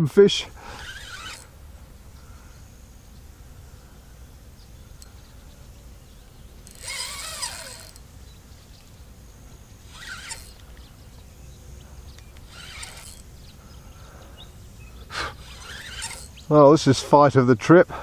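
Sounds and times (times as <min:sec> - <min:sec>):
fishing reel drag screeching: 0:00.3 - 0:02.3, 0:06.5 - 0:08.1, 0:09.8 - 0:10.9, 0:12.4 - 0:13.4, 0:15.2 - 0:16.6.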